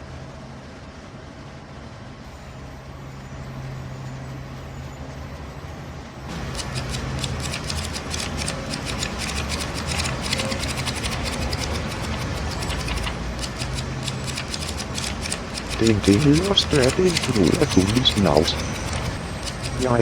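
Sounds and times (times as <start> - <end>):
rapid mechanical clicking: 6.3 - 20.0.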